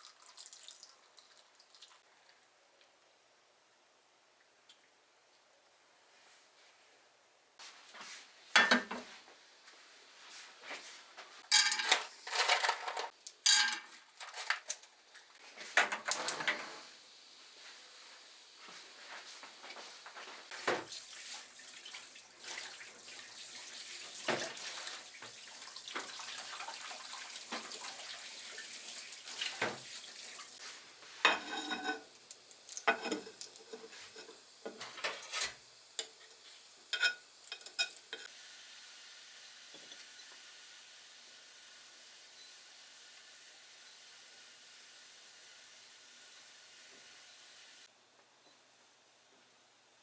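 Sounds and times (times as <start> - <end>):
dishes and utensils clinking: 8.6 - 9.2, 11.4 - 14.7, 31.2 - 38.3
steady hiss: 15.2 - 21.6.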